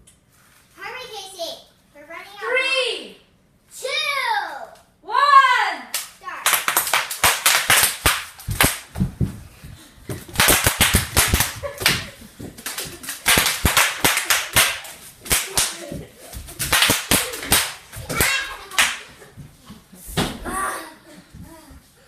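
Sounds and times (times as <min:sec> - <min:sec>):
bubble wrap popping: 0:10.3 - 0:15.8.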